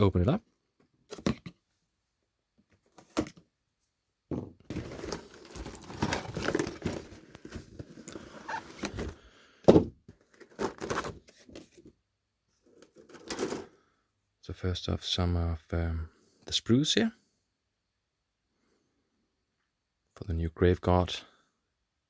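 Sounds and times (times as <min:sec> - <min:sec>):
cardboard box rustling and knocking: 0:04.3 - 0:11.8.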